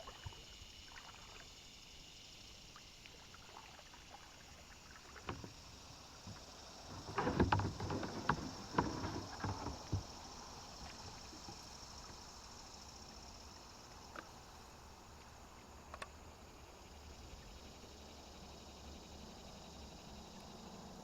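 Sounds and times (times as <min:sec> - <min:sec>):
water splashing: 0:00.0 - 0:01.7, 0:02.7 - 0:11.3
high insect drone: 0:00.0 - 0:21.0
paddle knocking against kayak: 0:04.9 - 0:12.2.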